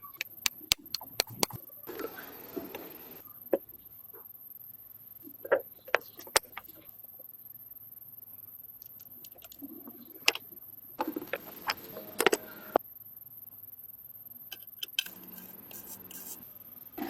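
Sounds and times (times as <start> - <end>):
hard objects clicking and knocking: 0.0 - 1.6.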